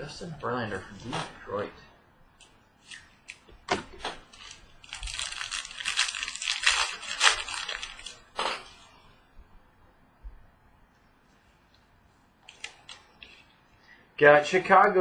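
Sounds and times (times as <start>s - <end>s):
wrapper crinkling: 2.8s - 8.9s, 12.4s - 13.6s.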